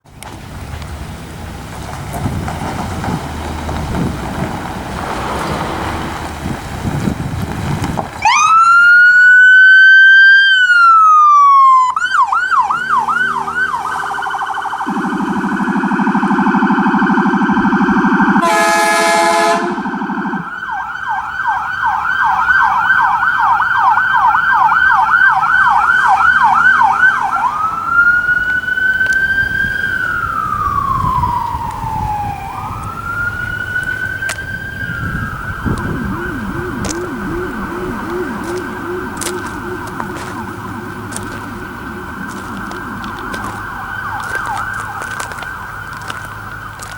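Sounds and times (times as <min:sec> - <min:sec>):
ambulance siren wailing and yelping: 0:08.2 - 0:46.9
low rumbling siren tone: 0:08.2 - 0:46.9
air horn blast: 0:18.4 - 0:20.1.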